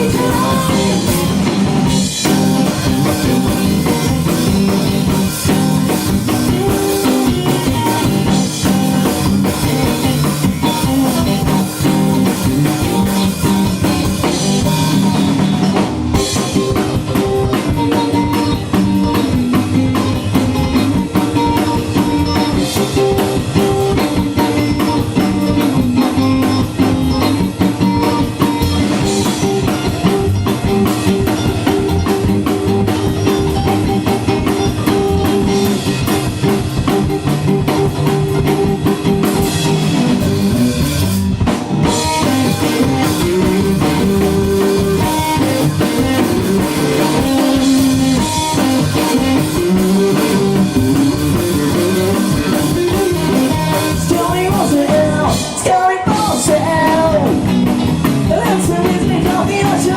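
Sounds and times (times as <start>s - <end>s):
rock band playing live: 0.0s - 59.9s.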